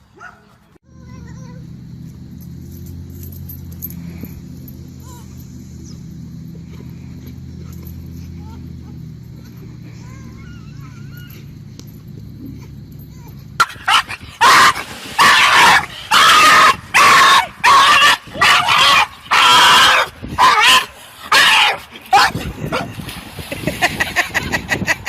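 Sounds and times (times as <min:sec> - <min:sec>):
dog barking and whining: 0:12.5 - 0:22.9.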